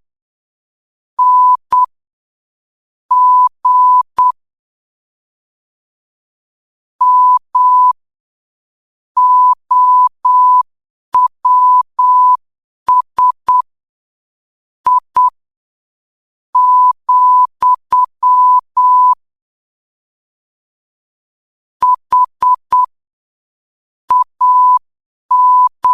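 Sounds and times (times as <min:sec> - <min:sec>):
morse code beeps: 0:01.2 - 0:01.9, 0:03.1 - 0:04.4, 0:09.2 - 0:10.6, 0:11.2 - 0:13.6, 0:16.6 - 0:19.2, 0:21.8 - 0:22.9, 0:24.1 - 0:25.9.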